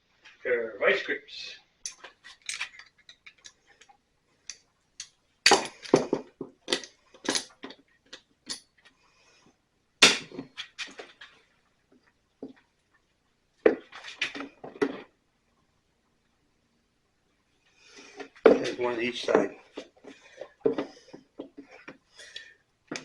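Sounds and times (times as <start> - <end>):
metal hand tools clattering: 1.9 - 3.6, 5.0 - 7.6.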